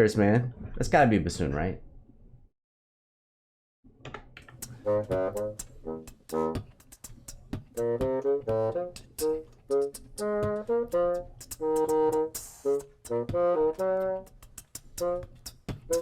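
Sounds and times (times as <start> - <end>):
horn section playing punchy notes: 4.7 - 16.0.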